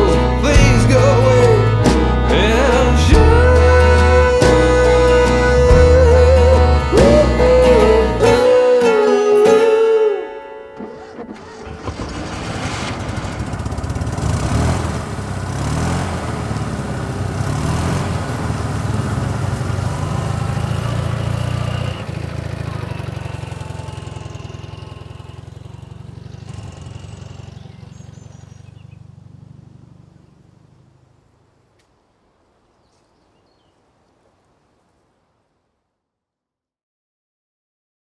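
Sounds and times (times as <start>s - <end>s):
engine running loudly: 0.0s - 8.5s, 10.8s - 30.9s.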